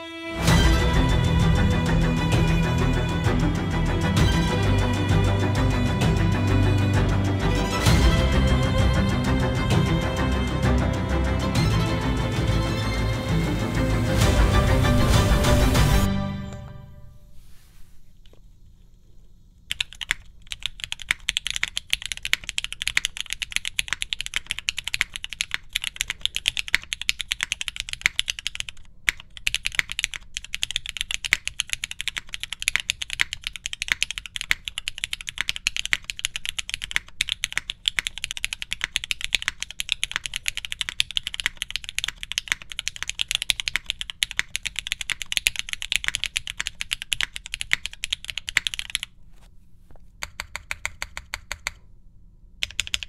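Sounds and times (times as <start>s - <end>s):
fast mechanical keyboard typing: 19.7s - 49.1s, 50.2s - 51.8s, 52.6s - 53.0s.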